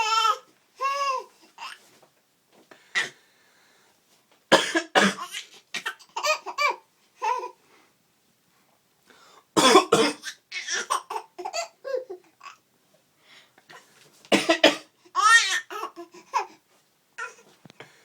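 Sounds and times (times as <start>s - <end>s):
man coughing: 4.5s - 5.3s, 9.6s - 10.2s, 14.3s - 14.9s
baby giggling: 5.4s - 7.5s.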